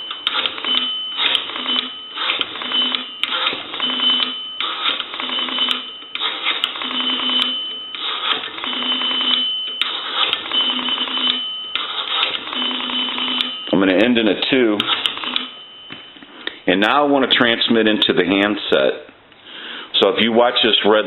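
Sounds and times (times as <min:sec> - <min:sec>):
rotary phone dial whirring and clicking: 0:00.0 - 0:13.6, 0:14.8 - 0:15.5.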